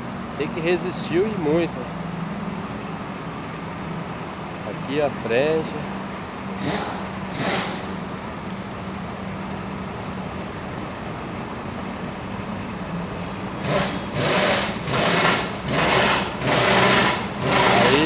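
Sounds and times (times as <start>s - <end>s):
motor humming: 3.8s - 11.9s, 13.4s - 18.0s
loud noise bursts: 6.6s - 8.2s, 13.6s - 18.0s.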